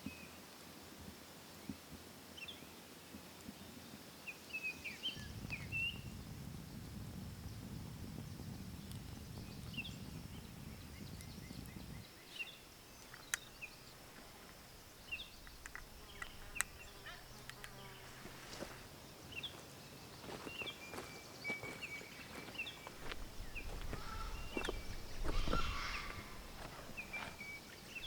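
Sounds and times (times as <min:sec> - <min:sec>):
faint insect hum: 0:00.0 - 0:28.0
small birds chirping: 0:03.4 - 0:28.0
sharp clicks and taps: 0:13.0 - 0:14.6, 0:15.2 - 0:17.9.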